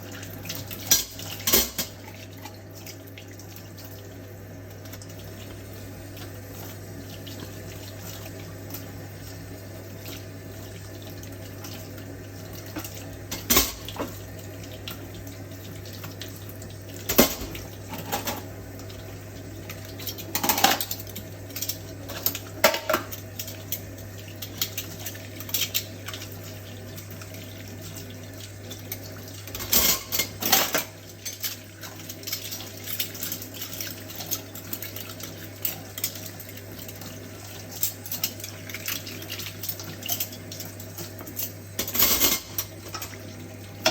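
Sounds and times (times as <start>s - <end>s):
dishes and cutlery clinking: 20.0s - 23.9s, 28.8s - 31.6s, 39.4s - 43.2s.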